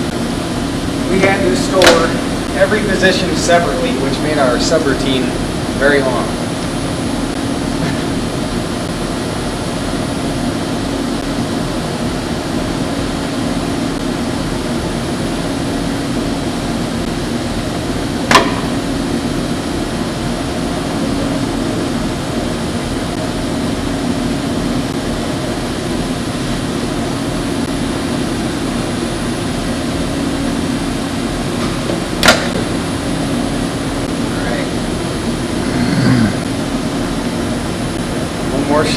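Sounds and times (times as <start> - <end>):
sharp knock: 18.3 - 18.8.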